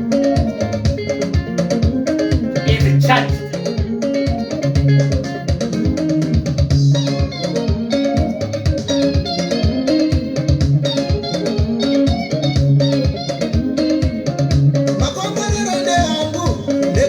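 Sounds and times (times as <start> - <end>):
picked guitar lines: 0.0 - 17.0
upbeat dance music: 2.2 - 4.0, 14.9 - 17.0
fast drum beat: 2.4 - 3.6.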